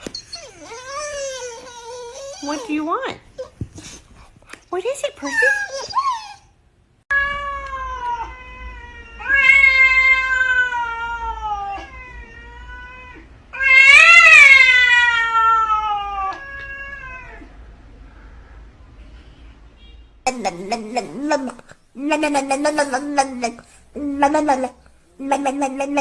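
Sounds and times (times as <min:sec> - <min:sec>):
cat meowing: 0:07.1 - 0:17.4.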